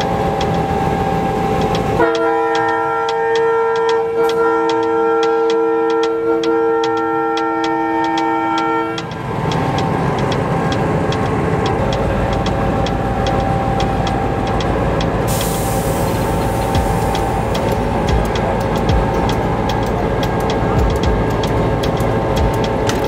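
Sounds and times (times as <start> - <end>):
train horn chord: 0.0 - 11.1
regular rail clicking: 0.0 - 23.0
train rumble: 0.0 - 23.0
hiss: 14.0 - 23.0.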